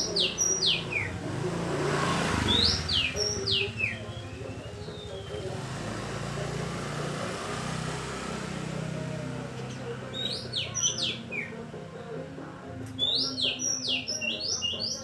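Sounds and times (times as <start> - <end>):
bird whistling song: 0.0 - 1.2, 2.4 - 5.7, 9.6 - 11.6, 12.9 - 15.0.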